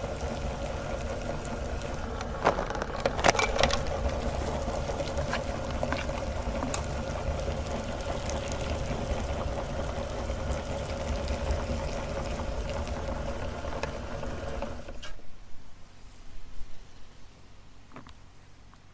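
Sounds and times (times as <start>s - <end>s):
meat grinder motor humming: 0.0s - 15.0s.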